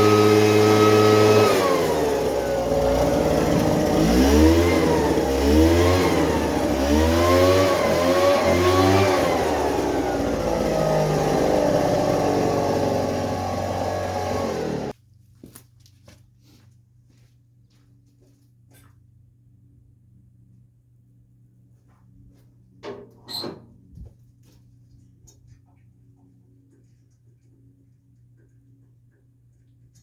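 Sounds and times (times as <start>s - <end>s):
small petrol engine revving: 0.0s - 15.0s.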